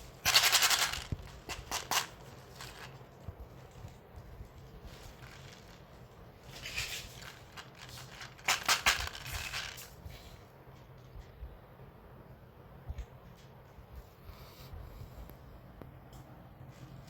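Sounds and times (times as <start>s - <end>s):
sharp crackles of plastic: 0.1s - 10.0s
plastic packet crinkling: 0.2s - 3.0s, 4.9s - 9.9s.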